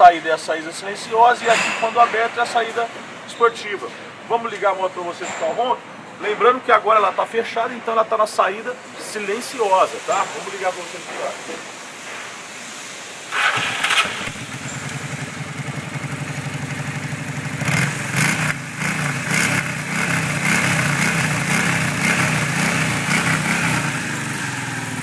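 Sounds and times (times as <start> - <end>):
motorcycle engine idling and revving: 13.3 - 25.0.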